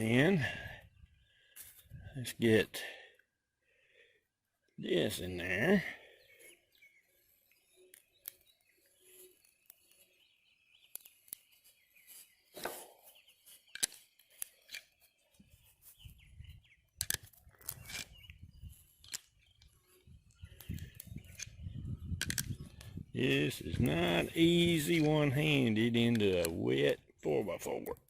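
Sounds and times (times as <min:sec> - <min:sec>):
faint birds chirping: 0:00.0 - 0:28.0
metal fitting clicks and creaks: 0:13.7 - 0:14.9, 0:17.0 - 0:18.2, 0:18.9 - 0:19.8, 0:22.2 - 0:22.9, 0:23.7 - 0:26.5.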